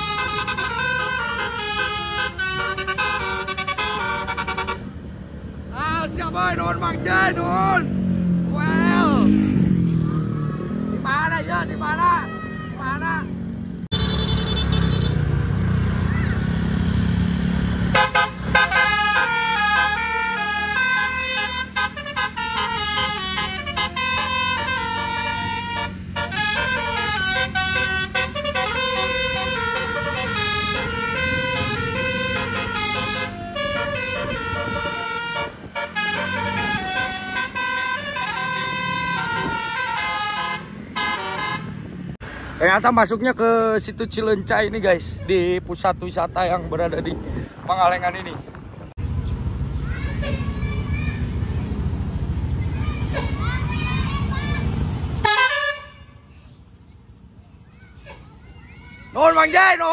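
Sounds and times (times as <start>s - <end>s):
bus air horns playing a tune: 0.0s - 5.0s, 13.9s - 15.2s, 17.9s - 41.9s, 55.2s - 56.3s
bus engine rumbling: 0.0s - 59.9s.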